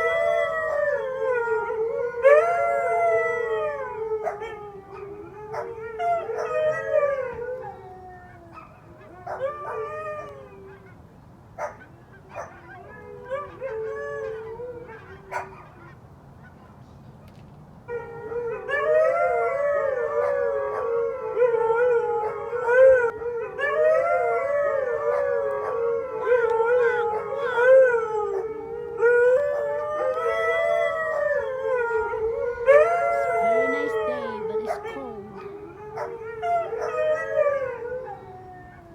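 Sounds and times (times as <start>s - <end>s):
huskies howling: 17.9s - 38.9s.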